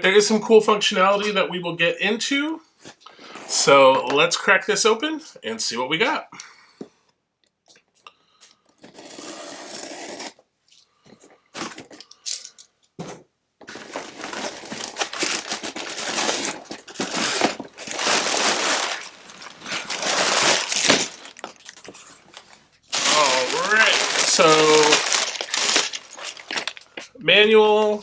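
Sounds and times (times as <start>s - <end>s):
plastic bags crinkling: 13.6s - 27.1s.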